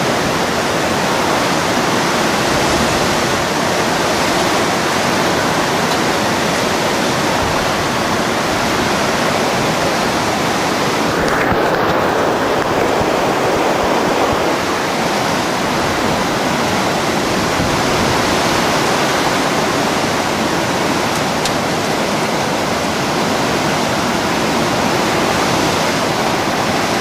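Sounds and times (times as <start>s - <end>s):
wind: 0.0s - 27.0s.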